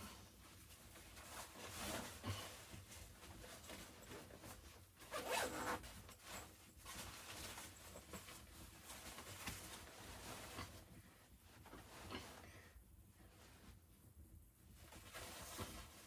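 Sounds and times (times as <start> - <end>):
zipper being pulled: 5.1 - 5.8.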